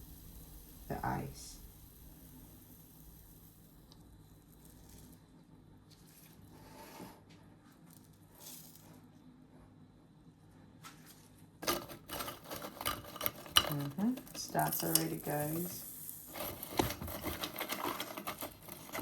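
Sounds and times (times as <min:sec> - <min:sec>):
ice cubes clicking and scraping: 0:11.6 - 0:19.0.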